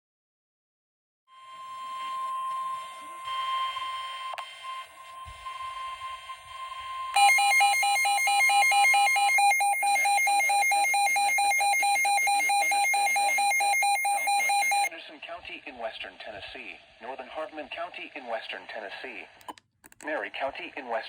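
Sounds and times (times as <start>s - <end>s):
steady alarm tone: 1.3s - 14.9s
rapidly pulsing alarm beep: 3.2s - 14.9s
synthesized voice speaking: 12.1s - 19.4s, 20.0s - 21.0s.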